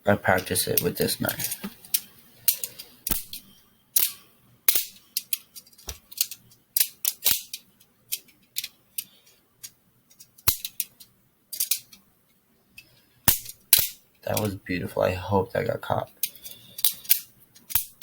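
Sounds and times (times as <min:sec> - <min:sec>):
plastic knife handles clacking: 0:00.4 - 0:03.3, 0:04.0 - 0:09.1, 0:10.2 - 0:12.0, 0:16.2 - 0:18.0.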